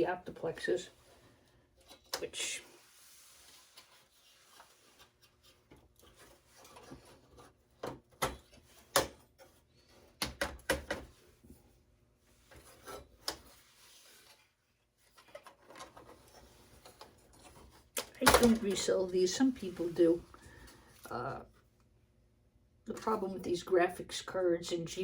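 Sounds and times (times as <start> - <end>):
computer parts clicking and knocking: 10.2 - 11.1.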